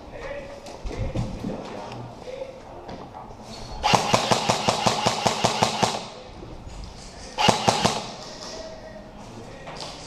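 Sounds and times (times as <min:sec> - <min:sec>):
airsoft gun firing rapidly: 0:03.8 - 0:06.2, 0:07.4 - 0:08.2.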